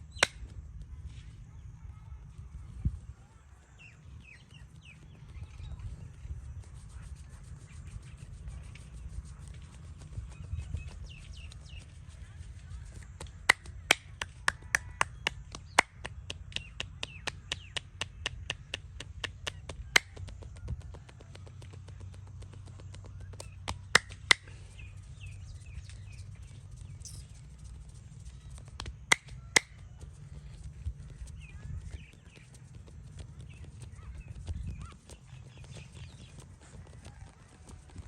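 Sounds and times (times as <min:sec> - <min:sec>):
hand slaps on body: 0:00.1 - 0:00.5, 0:22.9 - 0:24.4.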